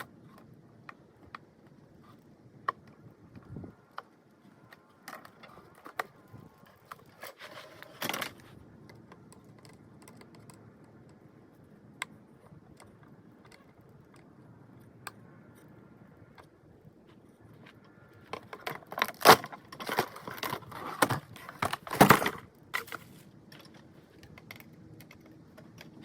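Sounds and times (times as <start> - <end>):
objects rattling: 18.2 - 23.8.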